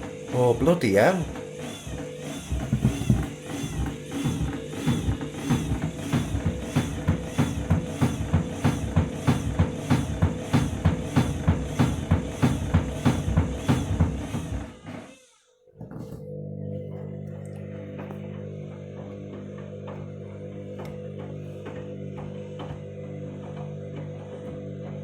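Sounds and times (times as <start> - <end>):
washing machine drum banging: 2.5 - 14.7
steady hum: 16.2 - 25.0.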